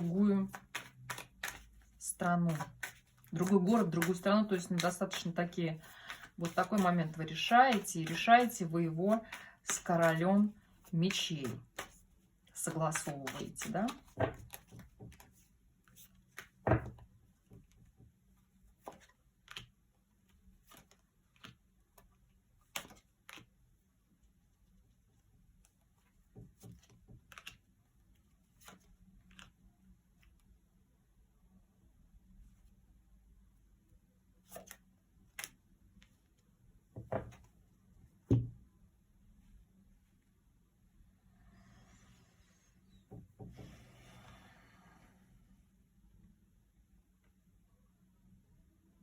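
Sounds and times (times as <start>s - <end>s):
cards tapping on a table: 0.4s - 1.6s, 12.9s - 15.3s, 16.4s - 17.0s, 37.0s - 37.5s, 38.3s - 38.6s
handling knocks on a table: 38.3s - 38.6s.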